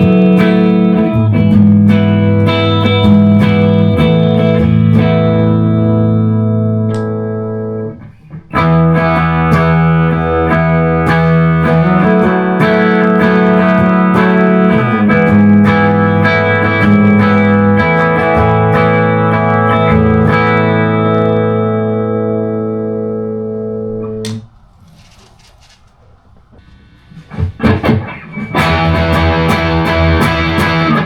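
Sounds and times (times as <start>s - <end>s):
distorted electric guitar chords: 0.0s - 31.0s.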